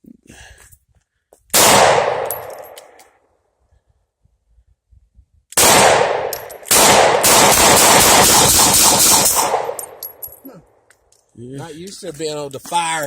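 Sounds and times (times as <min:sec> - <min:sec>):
gunshots: 0:01.6 - 0:02.5, 0:05.6 - 0:10.0.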